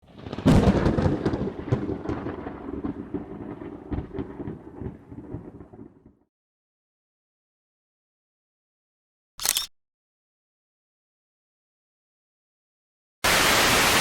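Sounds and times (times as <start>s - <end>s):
thunder clap rolling: 0.0s - 6.2s.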